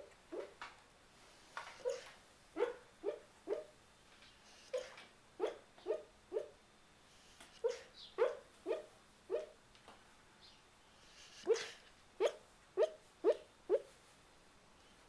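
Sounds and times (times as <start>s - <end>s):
dog barking short woofs: 1.8s - 3.7s, 11.4s - 13.9s.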